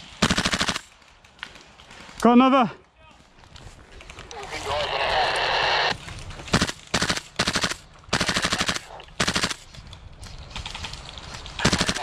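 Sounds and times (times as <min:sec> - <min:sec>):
airsoft rifle full-auto bursts: 0:00.2 - 0:00.9, 0:06.5 - 0:09.6, 0:11.6 - 0:12.0.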